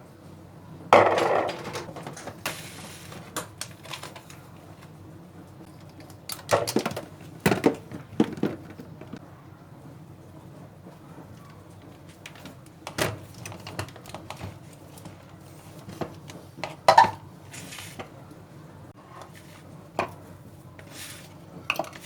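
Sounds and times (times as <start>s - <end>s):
objects knocking: 1.0s - 2.5s, 6.4s - 9.2s
objects clattering: 1.0s - 4.4s, 5.8s - 9.2s.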